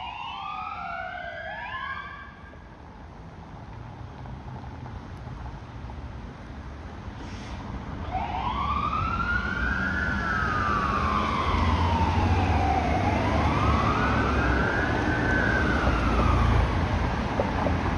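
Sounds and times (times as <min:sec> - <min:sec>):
fire engine siren wailing: 0:00.0 - 0:02.7, 0:08.0 - 0:17.4.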